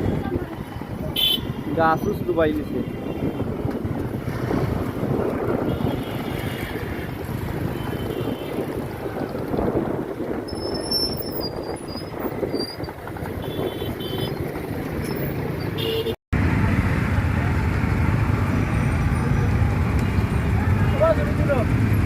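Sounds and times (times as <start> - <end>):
wind buffeting microphone: 0.0 - 15.6
road traffic rumble: 0.0 - 22.0.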